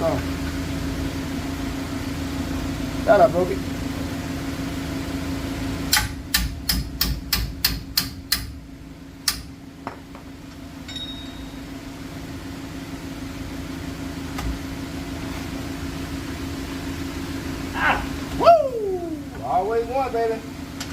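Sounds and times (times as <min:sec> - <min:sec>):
hammer striking metal: 0:05.9 - 0:08.5.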